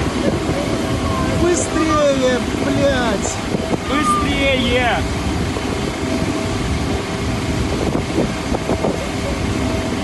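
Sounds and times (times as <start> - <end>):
steady low rumble: 0.0 - 10.0.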